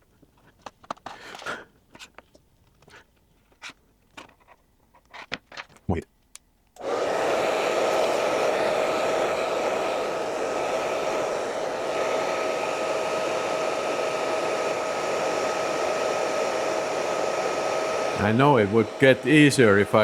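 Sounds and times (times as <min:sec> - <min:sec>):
hair dryer blowing: 0:06.8 - 0:20.0.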